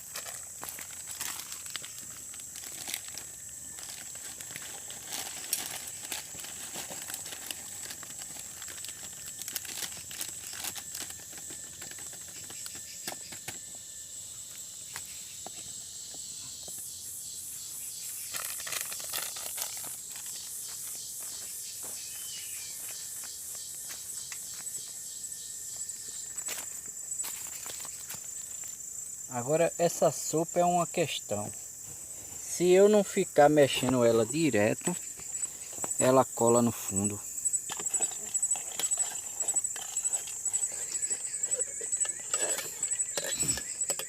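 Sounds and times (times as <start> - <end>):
crinkling and rustling of handling: 0.0 - 13.6, 18.2 - 21.4, 31.3 - 44.0
high insect trill: 0.0 - 44.0.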